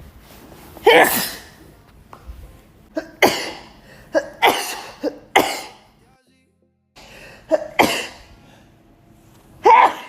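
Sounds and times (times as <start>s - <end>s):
woman sneezing: 0.8s - 1.6s, 7.5s - 8.3s, 9.6s - 10.0s.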